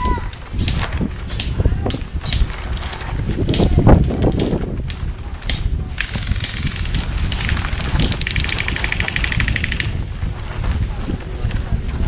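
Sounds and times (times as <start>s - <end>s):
wind on microphone: 0.0s - 12.0s
airsoft gun firing: 0.6s - 3.8s, 5.4s - 10.0s.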